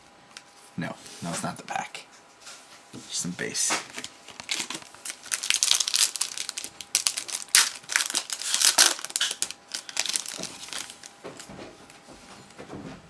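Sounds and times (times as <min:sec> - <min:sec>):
foil wrapper crinkling: 0:03.9 - 0:11.1.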